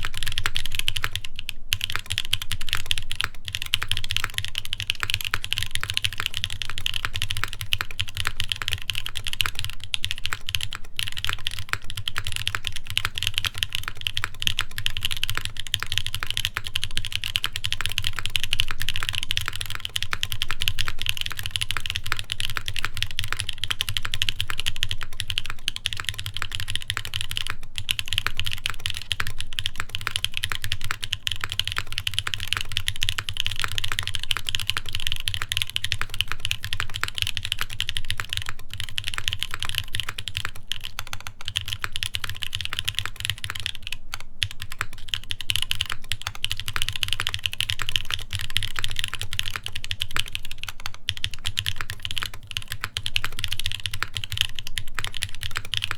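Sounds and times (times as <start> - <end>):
fast typing on mechanical keyboard: 0.0 - 55.9.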